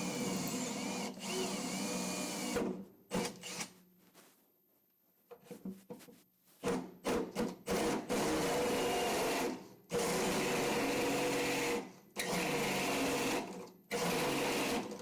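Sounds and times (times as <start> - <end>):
electric drill cutting metal: 0.0 - 2.6.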